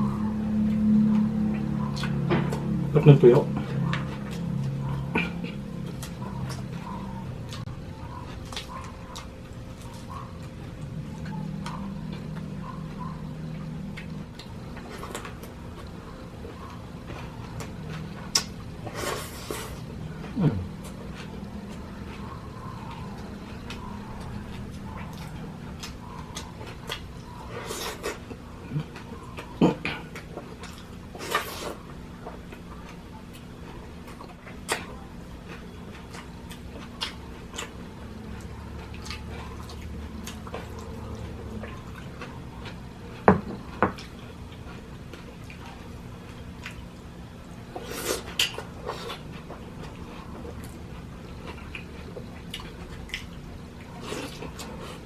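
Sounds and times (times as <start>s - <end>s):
chewing: 0.0s - 55.0s
faint steady hum: 0.0s - 55.0s.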